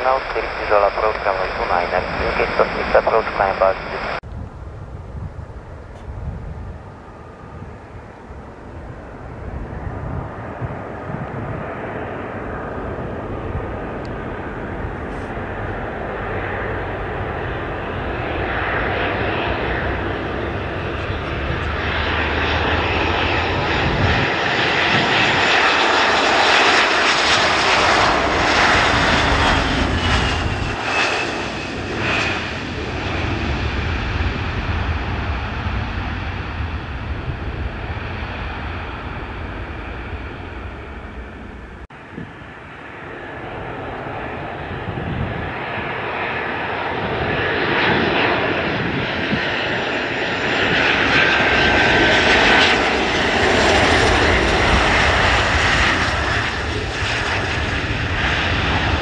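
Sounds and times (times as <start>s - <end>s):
airliner engines passing: 0.0s - 59.0s.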